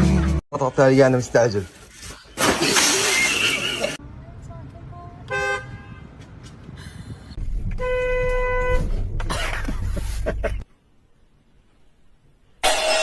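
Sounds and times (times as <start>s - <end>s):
car horn honking: 5.3s - 6.2s, 7.7s - 9.0s
low vehicle rumble: 6.1s - 10.6s.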